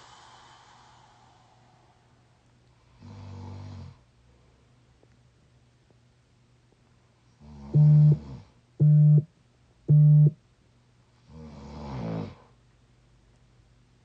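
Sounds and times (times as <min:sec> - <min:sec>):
person snoring: 0:07.4 - 0:08.4
steady-pitched tones: 0:08.8 - 0:09.3, 0:09.9 - 0:10.4.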